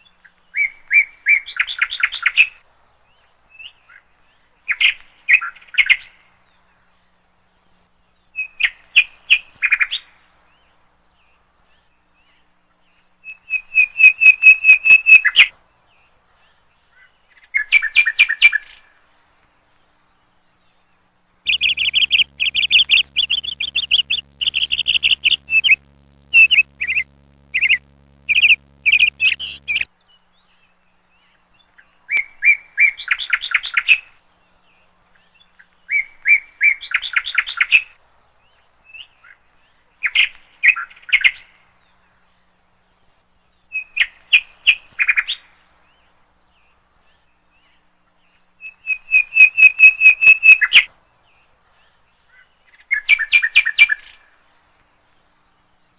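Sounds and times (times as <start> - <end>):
faint steady hum: 21.5 - 29.9
songbird chirping and trilling: 21.5 - 29.9.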